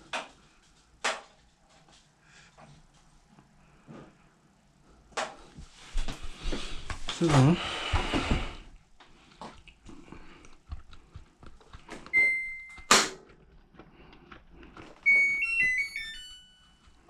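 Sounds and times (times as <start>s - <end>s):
long washer beep: 12.1s - 12.9s, 15.0s - 17.0s
electronic tune of beeps: 12.2s - 12.9s, 15.0s - 16.8s.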